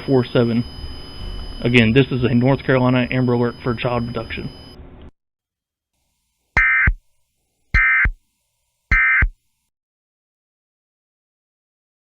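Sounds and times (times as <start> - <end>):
screeching digital data tone: 0.0 - 4.8, 8.9 - 9.4.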